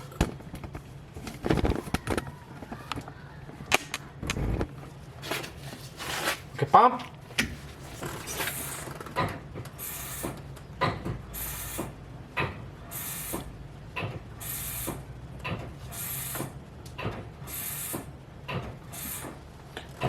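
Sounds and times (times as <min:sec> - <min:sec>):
steady low hum: 0:00.0 - 0:09.0
brake pedal click and hiss: 0:09.7 - 0:10.5, 0:11.4 - 0:12.0, 0:12.9 - 0:13.6, 0:14.4 - 0:15.0, 0:15.9 - 0:16.6, 0:17.4 - 0:19.4.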